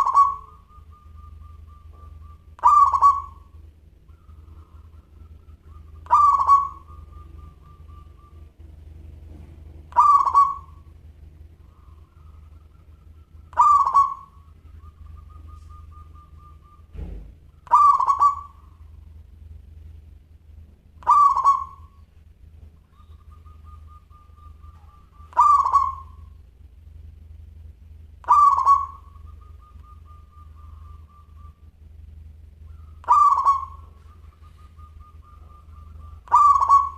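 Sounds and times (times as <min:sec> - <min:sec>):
dove cooing: 0:00.0 - 0:19.9, 0:20.6 - 0:36.9
dull low thump: 0:16.9 - 0:17.5.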